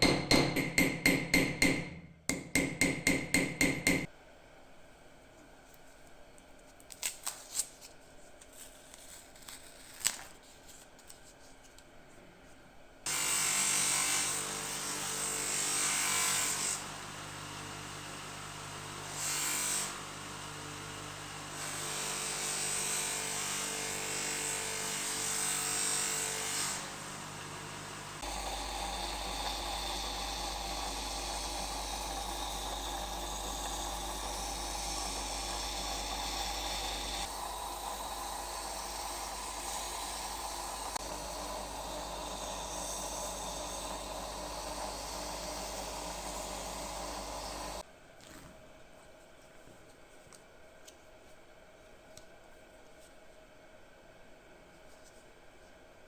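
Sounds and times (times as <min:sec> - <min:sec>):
small electric power tool running: 0:13.1 - 0:47.8.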